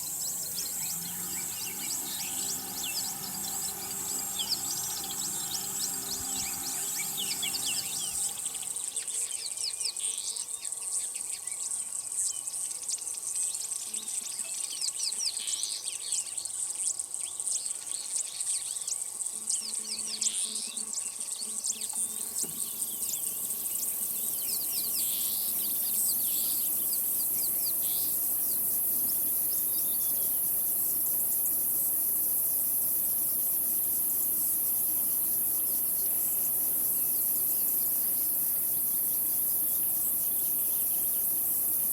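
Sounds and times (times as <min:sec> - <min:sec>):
wild birds chirping: 0:00.0 - 0:08.8, 0:22.6 - 0:41.9
insect chorus drone: 0:00.0 - 0:09.1, 0:21.6 - 0:41.9.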